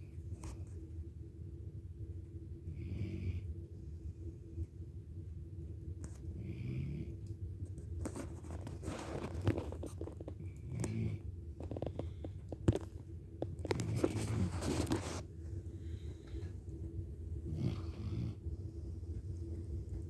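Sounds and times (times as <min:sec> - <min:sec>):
pet snoring: 0:02.7 - 0:03.5, 0:06.3 - 0:07.3, 0:08.0 - 0:15.3, 0:17.4 - 0:18.8.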